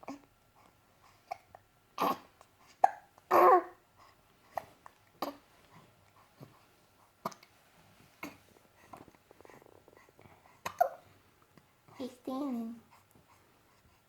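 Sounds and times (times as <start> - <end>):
baby hiccupping: 1.3 - 3.8, 10.6 - 11.0
baby vocal sound: 1.3 - 3.8, 8.2 - 11.1.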